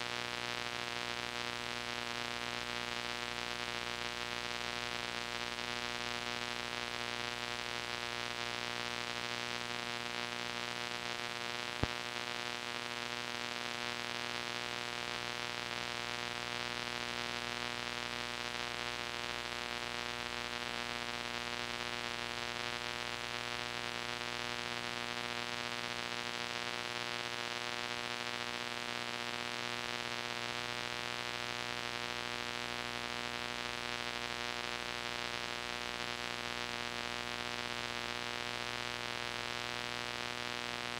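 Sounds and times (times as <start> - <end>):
tape hiss with electrical hum: 0.0 - 40.9.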